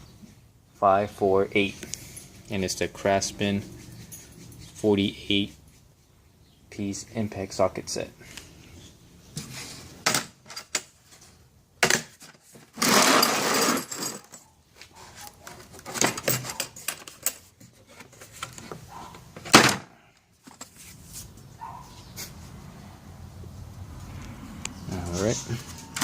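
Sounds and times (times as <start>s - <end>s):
scraping rustle: 12.2s - 19.5s, 20.4s - 22.6s.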